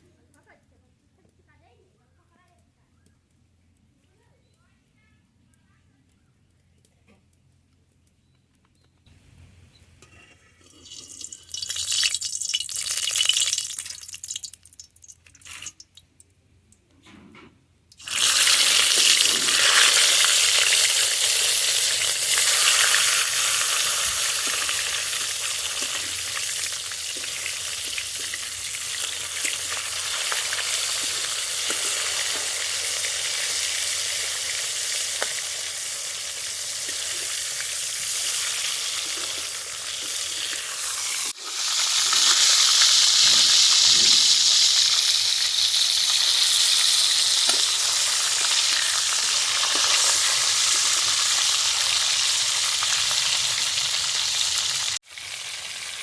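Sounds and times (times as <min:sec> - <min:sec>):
food sizzling in hot oil: 0:10.3 - 0:16.2, 0:17.9 - 0:56.0.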